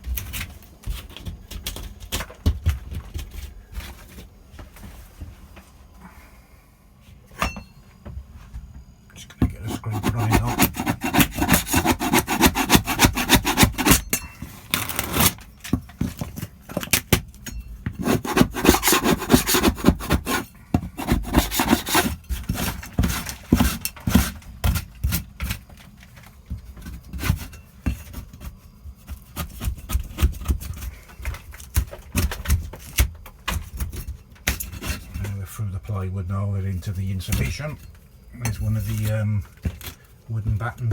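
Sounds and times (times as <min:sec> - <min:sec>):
hand tool scraping plywood: 0:09.5 - 0:14.0, 0:14.7 - 0:15.4, 0:18.0 - 0:24.4.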